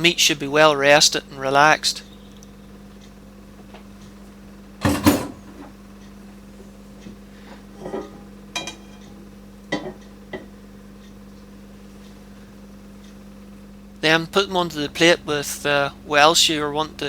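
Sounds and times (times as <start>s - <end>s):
frying pan clanking: 4.8s - 5.7s, 7.8s - 9.0s, 9.7s - 10.6s
cutlery clinking: 7.8s - 9.0s.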